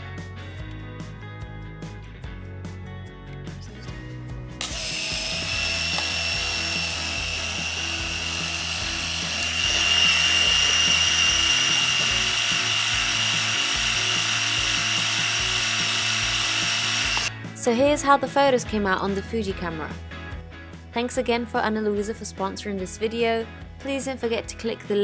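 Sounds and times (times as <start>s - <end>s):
quiet background music: 2.0s - 25.0s
camera motor whining: 4.6s - 17.3s.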